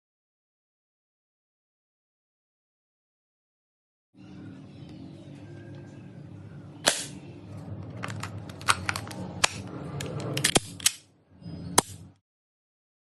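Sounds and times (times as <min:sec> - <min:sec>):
steady low hum: 0:04.2 - 0:12.2
airsoft gun snapping: 0:06.8 - 0:07.2.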